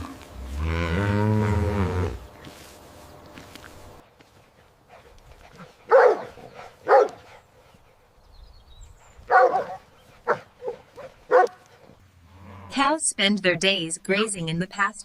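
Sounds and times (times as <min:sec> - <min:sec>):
dog barking: 0:05.9 - 0:07.2, 0:09.3 - 0:11.6.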